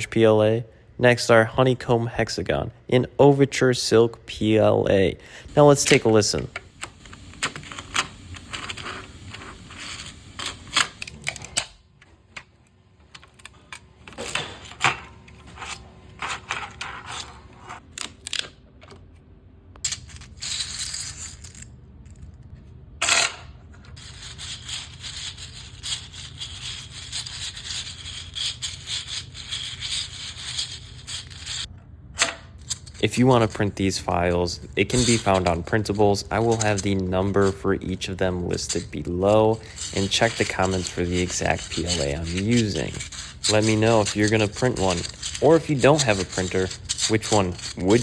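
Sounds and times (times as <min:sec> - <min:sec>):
plastic scraping: 0:34.8 - 0:48.0
plastic parts clicking and rattling: 0:34.9 - 0:48.0.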